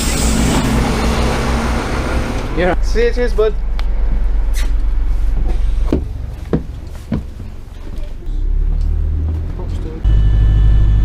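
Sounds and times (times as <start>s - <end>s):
bus engine rumble: 0.0s - 11.0s
deep rumble with whine: 0.0s - 11.0s
sharp knocks: 5.9s - 7.4s.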